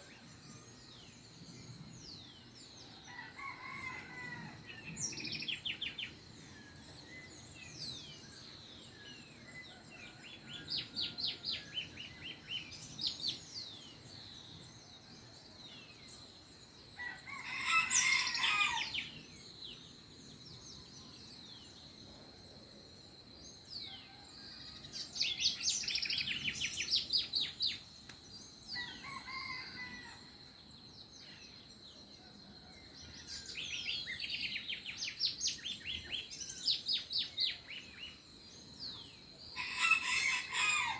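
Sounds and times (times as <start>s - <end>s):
songbirds chirping and trilling: 0.0s - 40.9s
rooster crowing: 17.0s - 19.0s, 39.6s - 40.9s.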